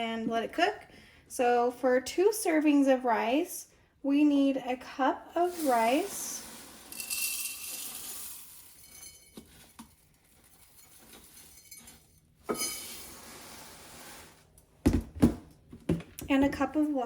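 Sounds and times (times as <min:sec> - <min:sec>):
dry rice pouring into dish: 0:05.5 - 0:09.7
light glass clinks: 0:11.6 - 0:12.9.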